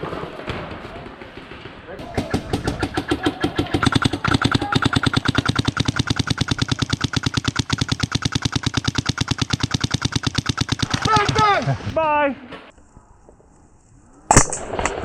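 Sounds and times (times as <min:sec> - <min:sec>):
paintball marker rapid firing: 0:01.4 - 0:11.9.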